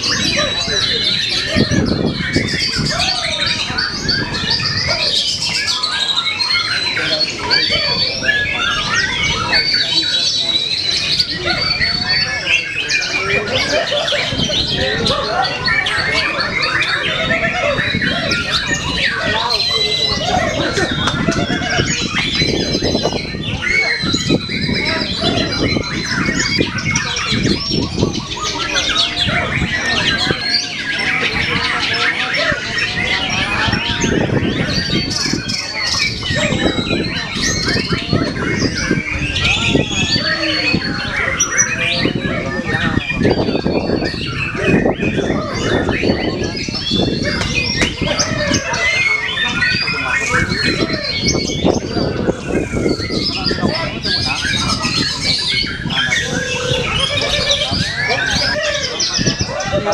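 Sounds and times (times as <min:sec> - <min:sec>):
bird singing whistled phrases: 0:00.0 - 0:13.6
wind buffeting microphone: 0:00.0 - 0:59.9.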